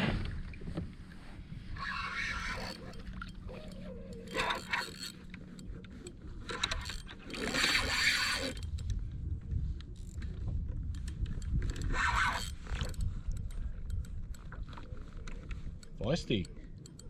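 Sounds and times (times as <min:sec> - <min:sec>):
fishing reel clicking: 0:01.8 - 0:09.0, 0:10.0 - 0:10.3, 0:10.9 - 0:17.0.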